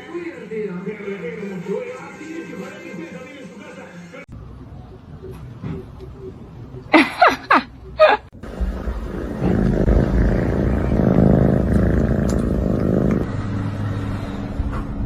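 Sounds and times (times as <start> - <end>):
cat rumbling: 8.3 - 13.3.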